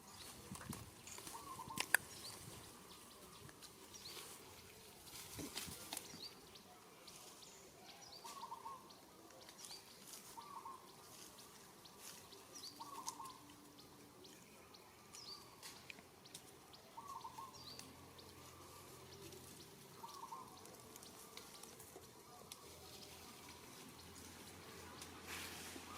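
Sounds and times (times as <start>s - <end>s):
soft hiss: 22.5s - 25.9s.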